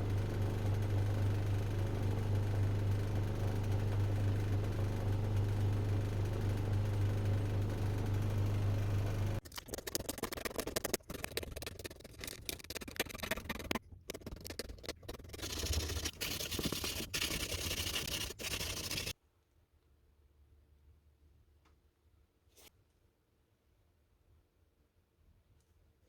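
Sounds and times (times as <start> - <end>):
workshop machine humming: 0.0 - 9.4
scraping and clicking of hand work: 9.4 - 19.1.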